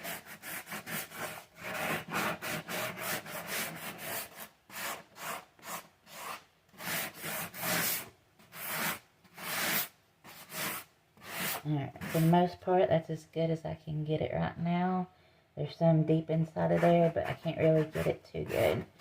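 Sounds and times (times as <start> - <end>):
sandpaper rubbing on wood: 0.0 - 8.0, 8.6 - 12.3.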